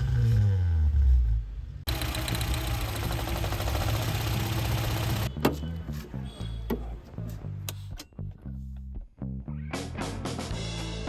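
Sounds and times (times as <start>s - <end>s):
car engine starting: 0.0s - 6.2s
car engine idling: 1.4s - 5.9s.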